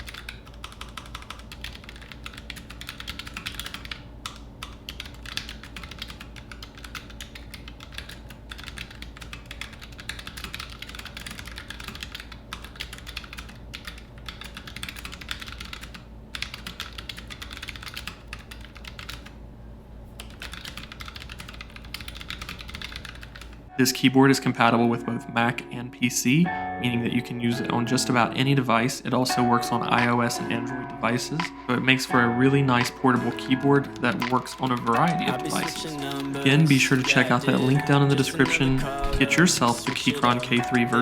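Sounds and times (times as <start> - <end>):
mechanical keyboard typing: 0.0 - 19.4, 20.2 - 23.6, 32.7 - 41.0.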